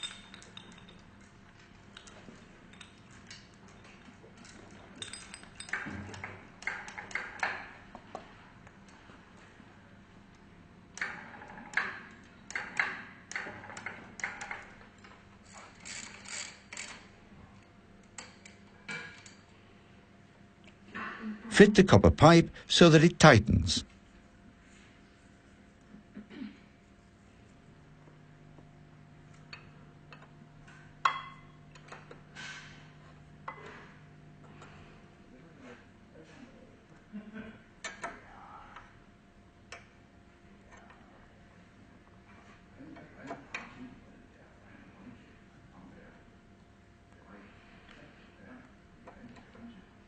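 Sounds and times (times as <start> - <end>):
metal tools clinking: 0.0 - 1.2, 2.7 - 5.9
steady low hum: 20.2 - 37.6.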